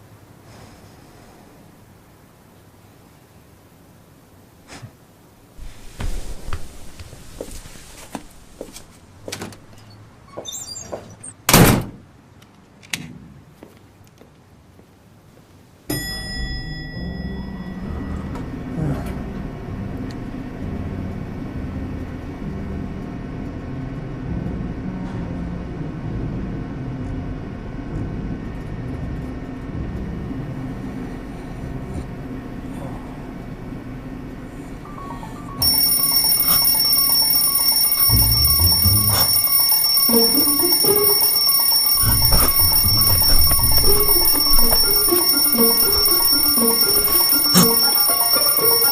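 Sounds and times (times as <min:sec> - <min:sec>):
loud high bell ringing: 0:15.9 - 0:18.4, 0:35.6 - 0:48.9
background music: 0:35.6 - 0:48.9.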